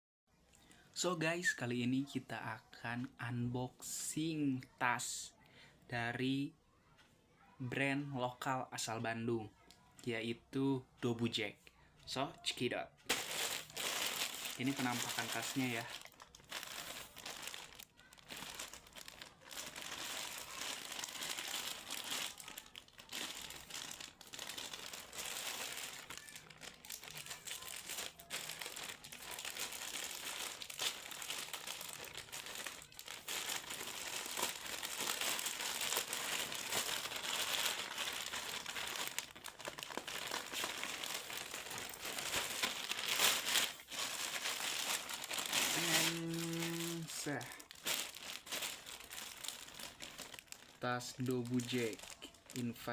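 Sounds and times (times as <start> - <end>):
packaging crinkling and rustling: 13.0 - 52.9.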